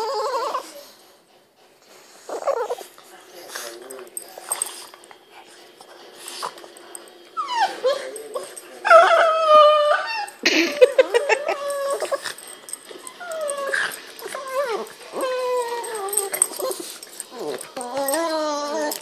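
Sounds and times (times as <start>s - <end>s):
dog whining and yowling: 0.0s - 0.8s, 7.3s - 19.0s.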